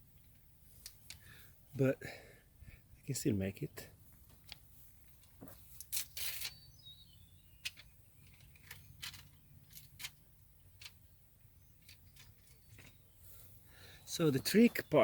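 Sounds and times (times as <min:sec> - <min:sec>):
small parts rustling: 0:00.0 - 0:01.4, 0:04.2 - 0:06.7, 0:07.5 - 0:13.6
small parts clicking: 0:00.1 - 0:01.4, 0:04.3 - 0:06.6, 0:07.6 - 0:11.1, 0:11.7 - 0:13.0.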